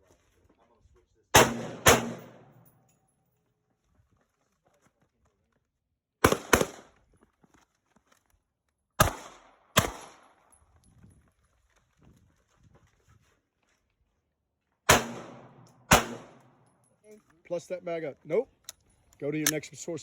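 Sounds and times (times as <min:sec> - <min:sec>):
gunshots: 0:01.4 - 0:02.6, 0:06.2 - 0:06.9, 0:09.0 - 0:10.3, 0:14.9 - 0:16.4.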